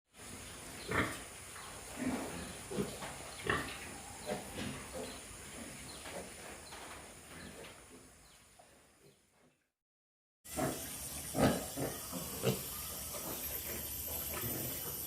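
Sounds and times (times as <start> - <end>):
pigs grunting and squealing: 1.9 - 5.2, 10.5 - 15.0.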